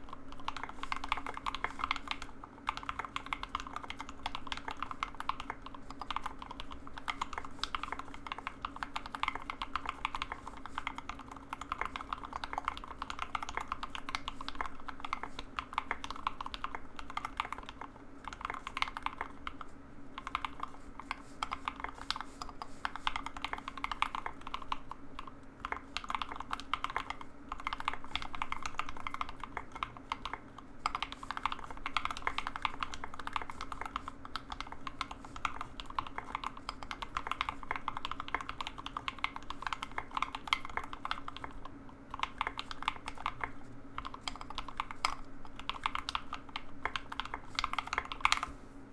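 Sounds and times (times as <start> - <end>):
fast typing on mechanical keyboard: 0.0 - 48.6.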